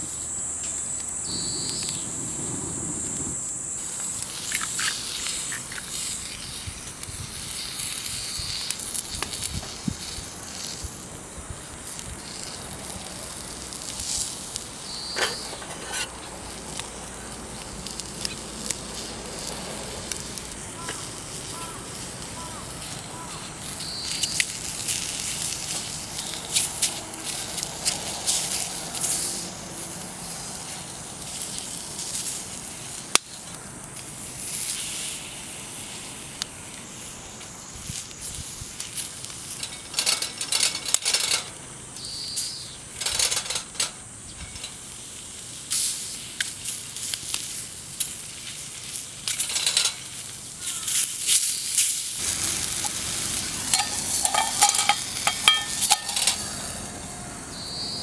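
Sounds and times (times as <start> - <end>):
food sizzling in a pan: 1.2 - 39.6, 44.7 - 58.0
utensil scraping and stirring: 15.1 - 16.4, 52.2 - 56.9.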